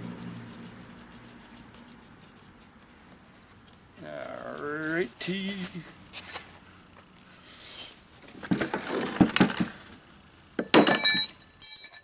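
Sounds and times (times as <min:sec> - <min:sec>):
metal tools clattering: 0:10.6 - 0:12.0
sharp metallic clink: 0:10.8 - 0:12.0.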